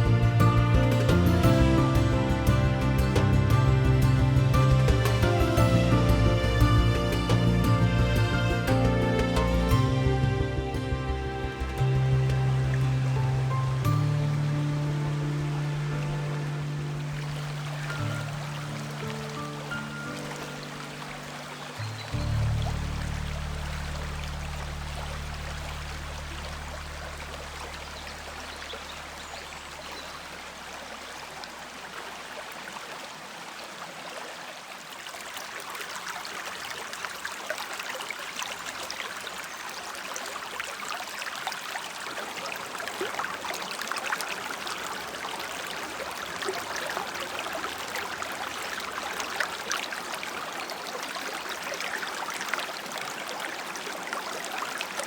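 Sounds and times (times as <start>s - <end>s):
low background music: 0.0s - 28.5s
stream burbling: 0.0s - 55.0s.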